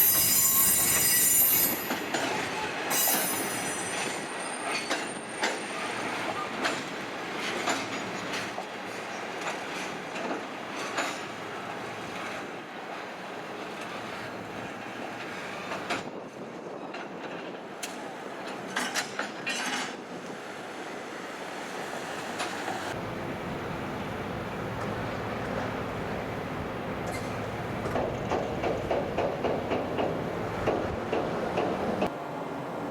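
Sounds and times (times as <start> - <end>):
train wheels clicking over rail joints: 0.1 - 12.5, 15.2 - 20.3, 22.4 - 32.2
freight train rumble: 21.6 - 32.9.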